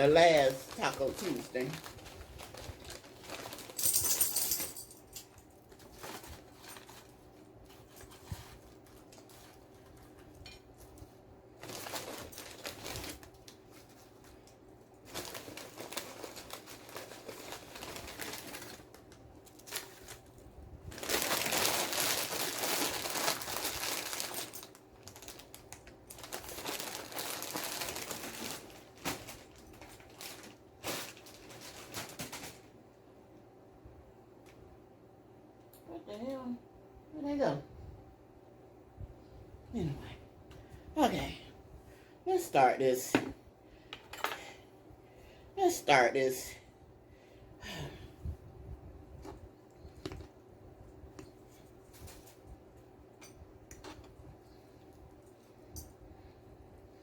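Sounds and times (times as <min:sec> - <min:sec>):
packaging rustling and crinkling: 0:00.0 - 0:32.8.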